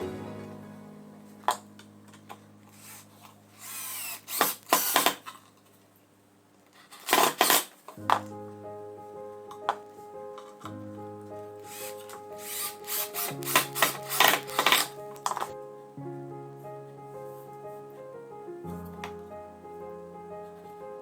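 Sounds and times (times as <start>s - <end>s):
background music: 0.0s - 2.7s, 8.0s - 21.0s.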